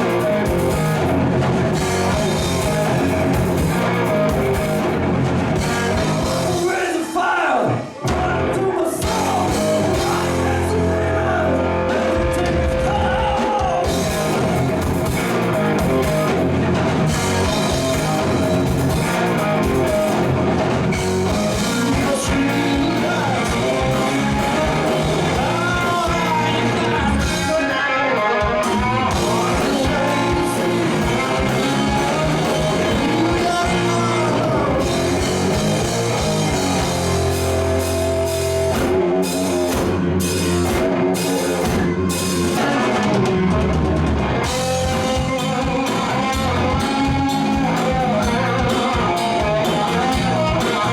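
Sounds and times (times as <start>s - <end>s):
rock band playing: 0.0s - 50.9s
person singing: 5.9s - 14.6s, 17.2s - 20.4s, 21.2s - 37.0s.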